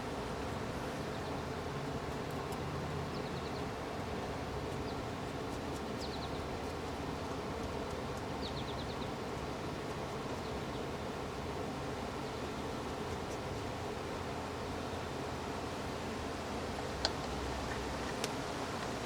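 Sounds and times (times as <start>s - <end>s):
steady background hiss: 0.0s - 19.0s
small bird chirping: 5.7s - 11.1s.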